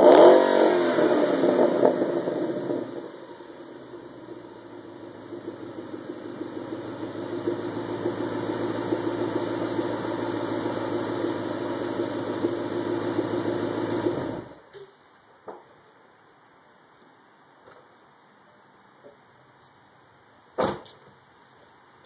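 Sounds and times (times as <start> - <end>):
car engine running: 0.0 - 14.6.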